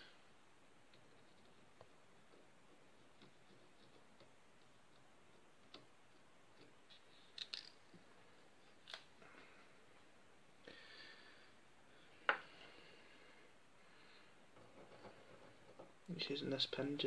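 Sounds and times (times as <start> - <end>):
faint clicks and taps of small objects: 0.9 - 9.7.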